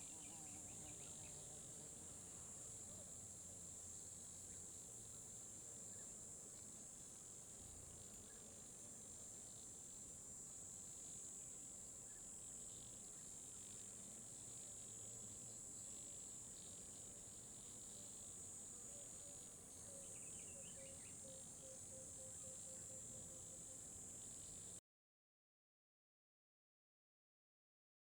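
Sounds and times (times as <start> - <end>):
insect trill: 7.0 - 24.8.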